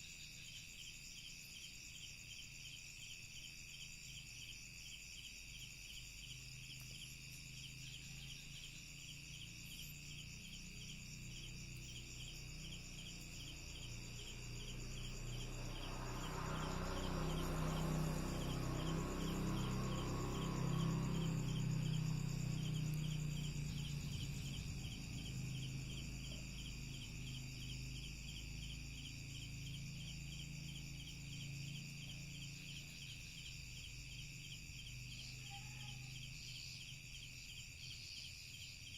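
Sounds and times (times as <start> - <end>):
crickets and night insects: 0.0 - 38.9.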